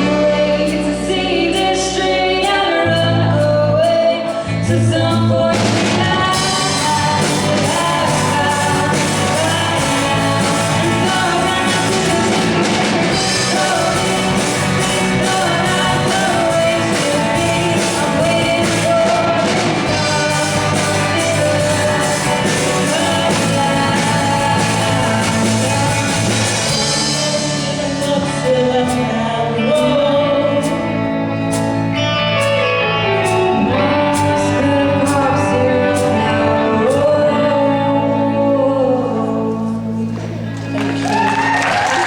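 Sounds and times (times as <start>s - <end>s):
lead singer singing: 0.0s - 42.0s
live band playing: 0.0s - 42.0s.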